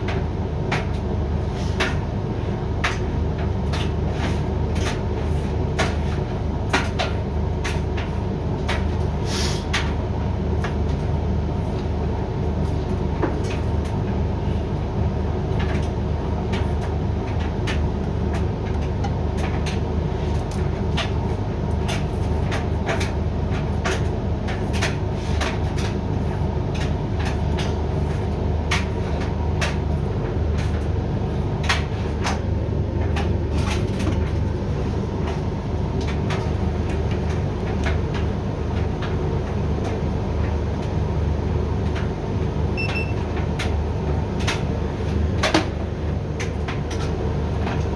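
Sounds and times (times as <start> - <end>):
washer-dryer humming: 0.0 - 47.9.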